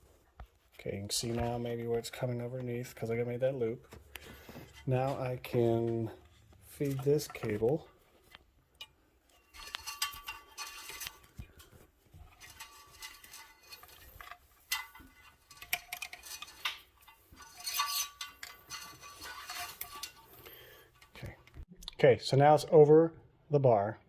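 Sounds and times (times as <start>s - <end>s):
metal cable rattling against frame: 1.3s - 21.6s.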